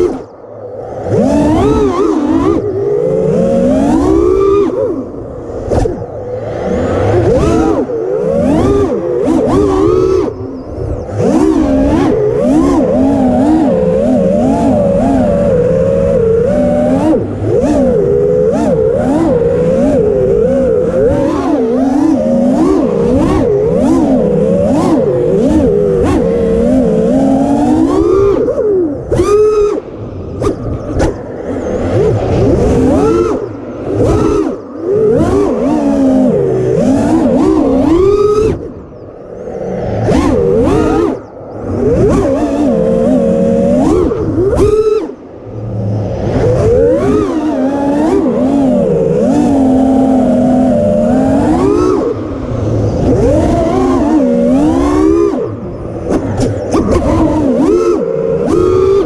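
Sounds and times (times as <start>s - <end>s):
drone propellers whining: 0.0s - 59.0s
wind and prop wash rumble: 36.9s - 59.0s.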